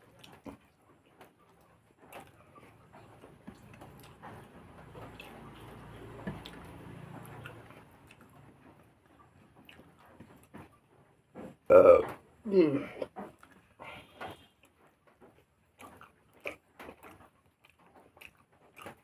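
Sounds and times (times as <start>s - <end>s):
person chewing food: 0.0s - 12.2s, 12.9s - 19.0s.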